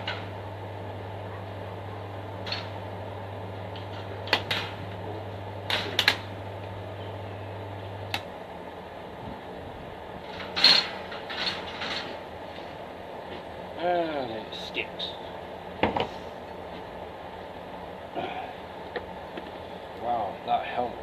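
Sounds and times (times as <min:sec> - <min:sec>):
stick welder humming: 0:00.0 - 0:13.1
clicks and knocks of metal: 0:02.4 - 0:02.8, 0:03.7 - 0:04.8, 0:05.7 - 0:06.3, 0:10.2 - 0:12.7.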